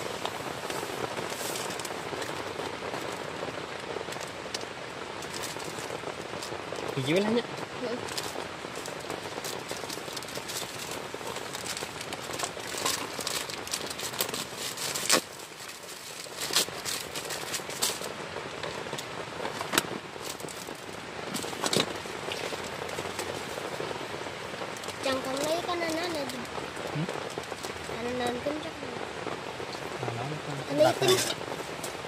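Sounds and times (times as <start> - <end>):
heavy rain on a tent: 0.0 - 32.0.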